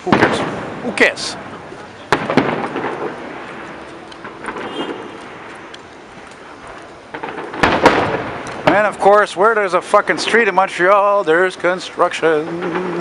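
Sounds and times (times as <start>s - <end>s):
fireworks bangs: 0.0s - 13.0s
fireworks rumble: 0.0s - 13.0s
small crackles: 1.6s - 8.9s.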